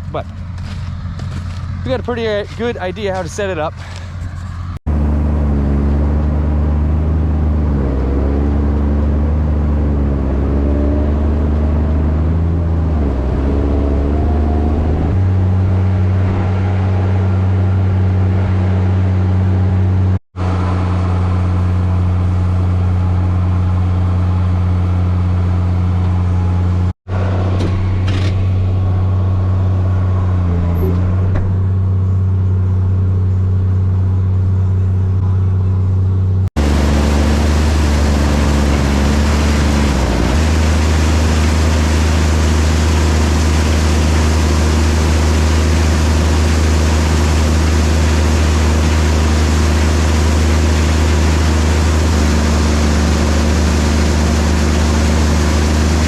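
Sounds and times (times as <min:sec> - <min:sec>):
vehicle engine running loud: 0:00.0 - 0:56.0.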